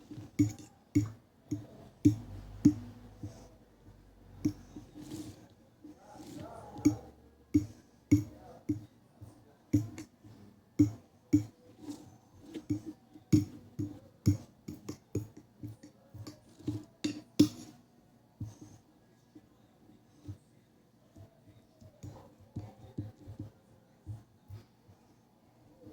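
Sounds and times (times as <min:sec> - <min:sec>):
cutlery tapping on plate: 0:00.1 - 0:03.5, 0:04.4 - 0:05.3, 0:06.2 - 0:08.9, 0:09.8 - 0:10.2, 0:10.8 - 0:17.8.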